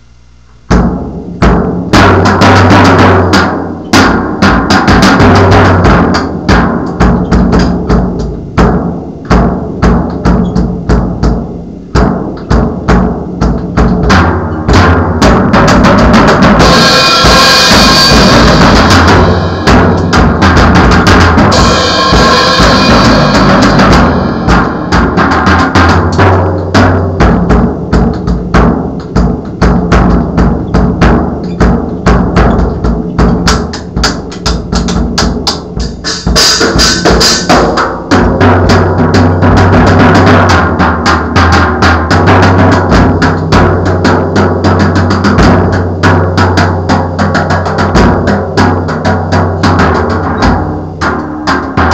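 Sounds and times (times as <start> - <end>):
bass drum and snare hits: 0.6 - 51.9
cymbal crashes: 16.0 - 26.2.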